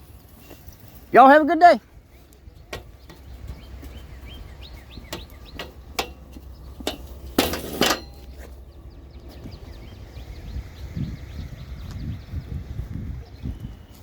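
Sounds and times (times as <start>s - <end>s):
small birds chirping: 0.0s - 14.0s
rattling clatter: 5.1s - 8.5s.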